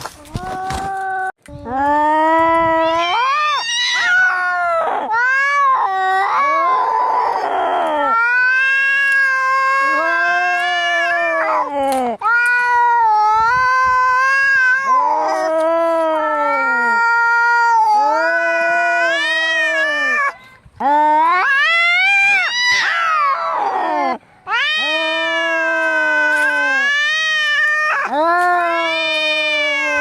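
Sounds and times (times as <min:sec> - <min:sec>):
cats yowling: 0:02.6 - 0:20.4, 0:21.1 - 0:30.0
harsh cat cry: 0:02.6 - 0:30.0.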